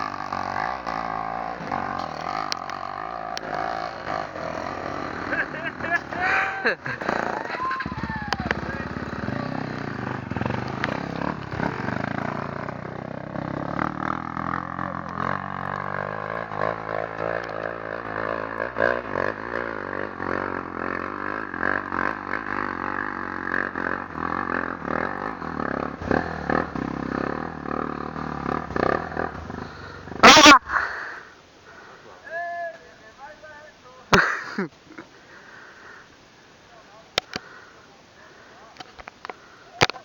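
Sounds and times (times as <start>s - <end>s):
dirt bike engine revving: 0.0s - 31.2s.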